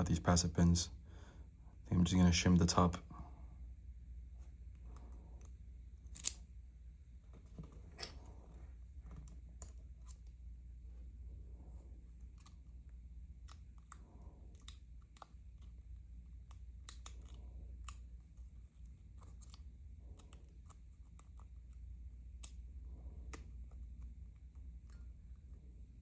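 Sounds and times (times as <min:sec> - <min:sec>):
low steady hum: 0:00.0 - 0:26.0
small metallic tool clicks and scrapes: 0:04.9 - 0:06.4.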